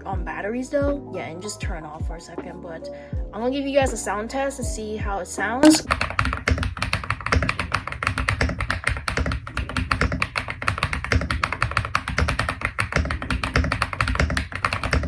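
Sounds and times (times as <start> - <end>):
mechanical keyboard typing: 5.6 - 15.0.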